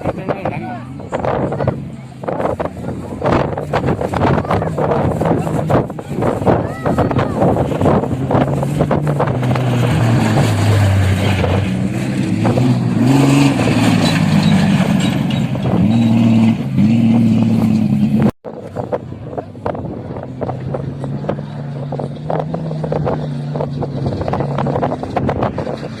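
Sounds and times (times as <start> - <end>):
rushing background noise: 0.0 - 26.0
vehicle engine revving: 0.0 - 26.0.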